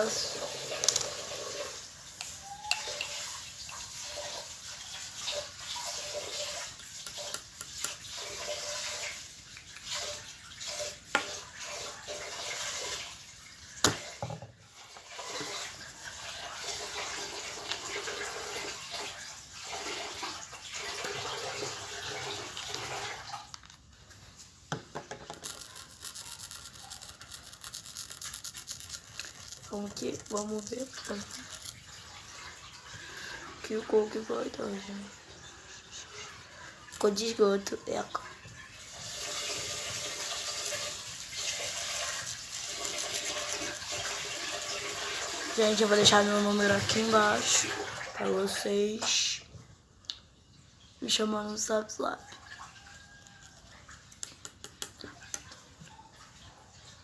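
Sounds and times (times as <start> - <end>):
slime squishing and scraping: 25.4 - 31.9.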